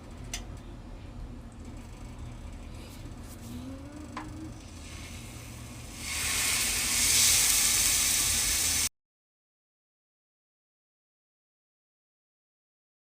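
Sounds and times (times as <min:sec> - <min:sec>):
chicken sizzling in a frying pan: 0:04.8 - 0:08.9.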